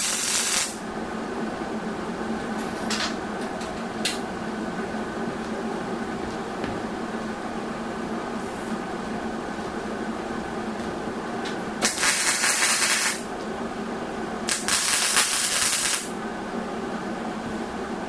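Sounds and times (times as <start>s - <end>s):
welding arc crackle: 0.0s - 0.8s, 11.8s - 13.3s, 14.5s - 16.2s
welding machine hum: 0.0s - 0.9s, 11.4s - 13.6s, 14.4s - 16.3s.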